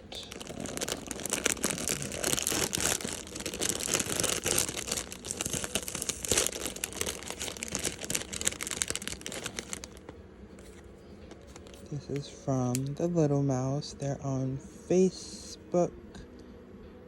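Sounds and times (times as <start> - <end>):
packaging crinkling: 0.1 - 11.9.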